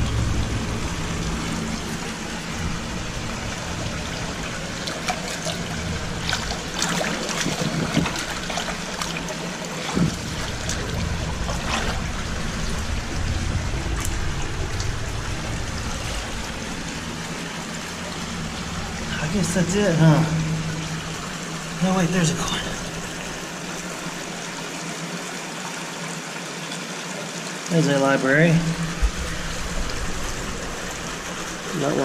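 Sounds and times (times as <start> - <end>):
creek water trickling: 0.0 - 32.0.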